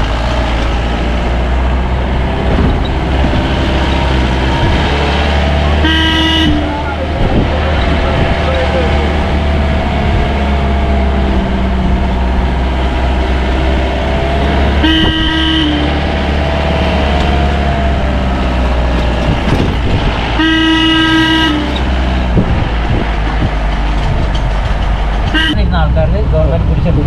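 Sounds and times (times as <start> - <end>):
jeep engine running under load: 0.0 - 27.0
vehicle horn: 5.6 - 6.9, 14.7 - 16.0, 20.4 - 21.8, 25.3 - 25.6.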